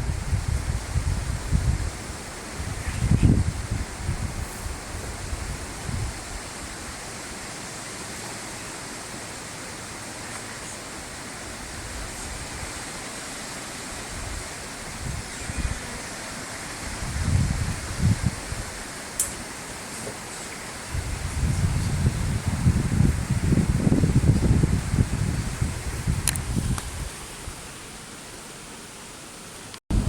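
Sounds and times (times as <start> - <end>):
wind buffeting microphone: 0.0 - 7.1, 13.9 - 16.0, 16.8 - 18.9, 20.8 - 27.8
steady rushing outdoor noise: 0.0 - 30.0.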